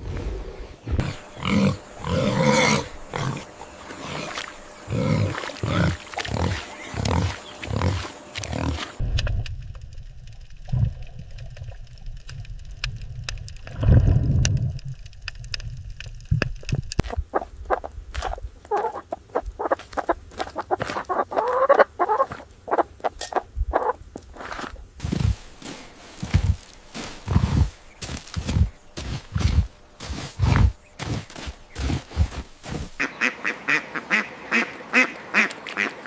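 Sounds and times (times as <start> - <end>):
low rumble: 9.0 - 17.4.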